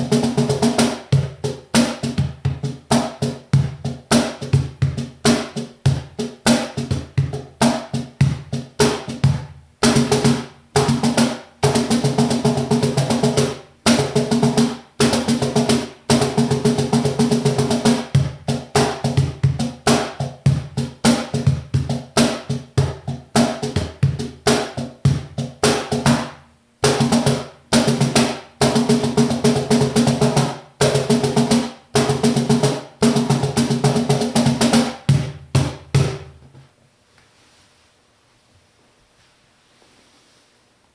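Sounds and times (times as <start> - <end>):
cajon played by hand: 0.0 - 36.6.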